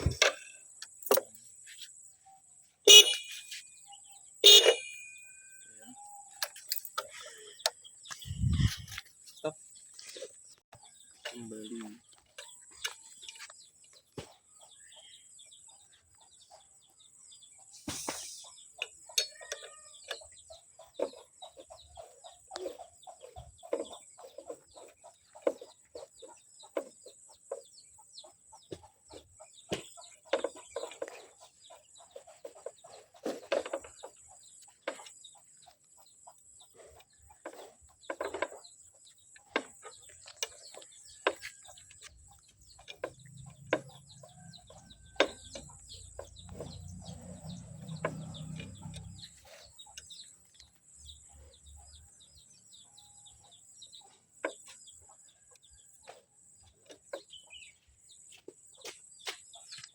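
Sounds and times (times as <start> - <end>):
chickens clucking: 18.5 - 59.9.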